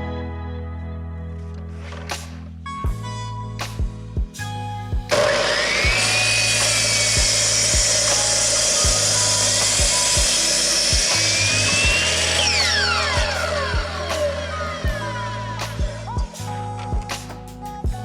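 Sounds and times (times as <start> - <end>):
background music with steady beat: 0.0 - 18.0
electric saw cutting wood: 5.1 - 16.2.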